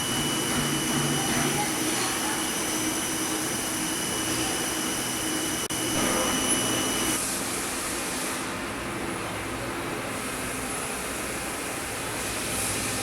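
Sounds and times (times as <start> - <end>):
high-pitched whine: 0.0 - 7.2
milling machine running: 0.0 - 7.2.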